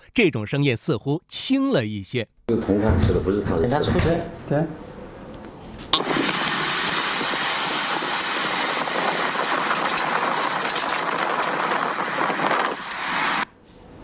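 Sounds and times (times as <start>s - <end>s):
road and wind noise: 5.8s - 14.0s.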